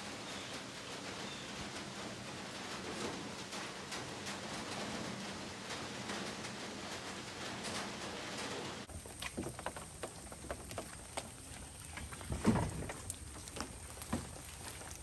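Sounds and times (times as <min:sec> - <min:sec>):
heavy rain hissing: 0:00.0 - 0:08.9.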